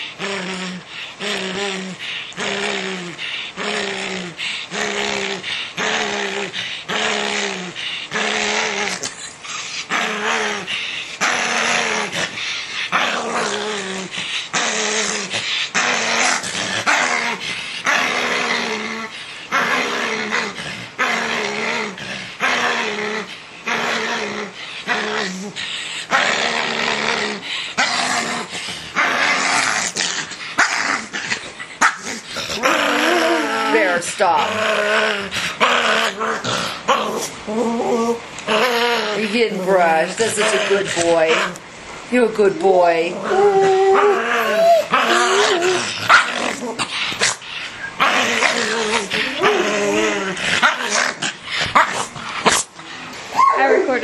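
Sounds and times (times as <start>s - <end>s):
dog growling: 0.0s - 41.6s, 42.4s - 54.0s.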